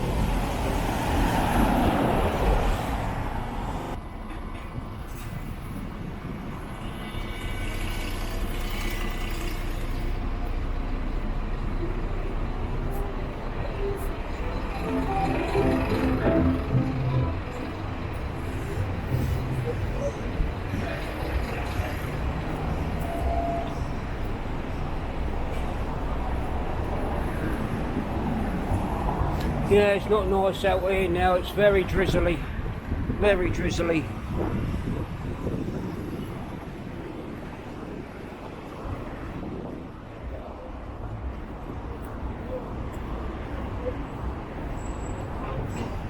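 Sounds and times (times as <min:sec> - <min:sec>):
street traffic: 0:00.0 - 0:46.0
wind buffeting microphone: 0:31.8 - 0:42.4.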